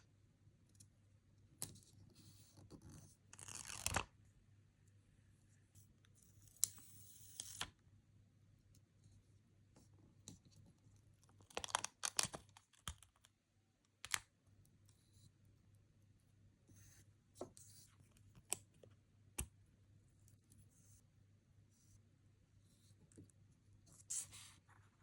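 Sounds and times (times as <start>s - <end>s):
crinkly clicks: 11.3s - 13.3s.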